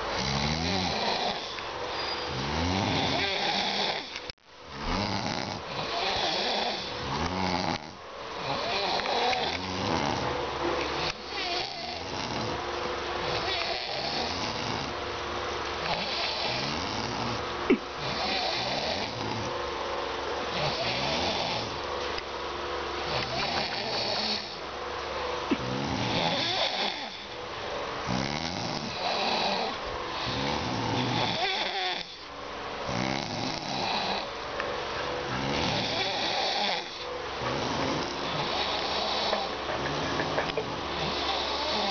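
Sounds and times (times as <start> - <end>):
hissing sleeping breath: 0.0 - 10.3, 15.8 - 19.6, 35.3 - 41.9
rattling snore: 0.1 - 12.6, 13.2 - 15.0, 15.8 - 19.6, 20.5 - 21.8, 23.0 - 24.6, 25.4 - 27.4, 28.0 - 32.3, 32.9 - 34.3, 35.3 - 41.9.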